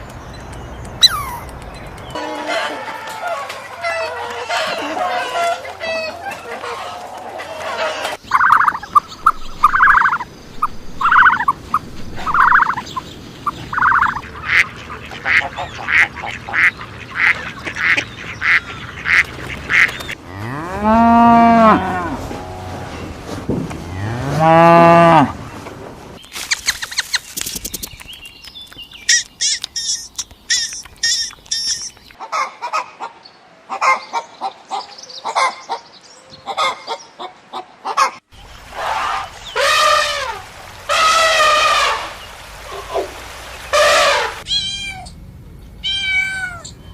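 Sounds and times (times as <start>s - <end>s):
waterfowl honking: 2.2s - 10.2s, 11.0s - 12.8s, 13.5s - 20.6s, 36.5s - 44.5s
cow mooing: 20.2s - 23.0s, 23.8s - 25.4s.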